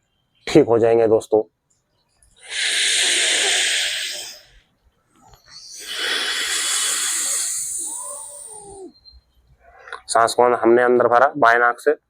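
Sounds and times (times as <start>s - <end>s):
man breathing through nostril: 2.4s - 4.7s, 5.4s - 8.9s.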